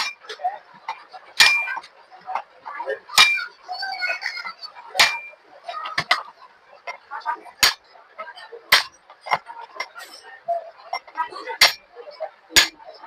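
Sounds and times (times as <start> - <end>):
hammer striking chisel on metal: 1.4 - 1.8, 3.2 - 3.4, 5.0 - 5.3, 7.6 - 7.8, 8.7 - 9.4, 11.6 - 11.8, 12.6 - 12.8.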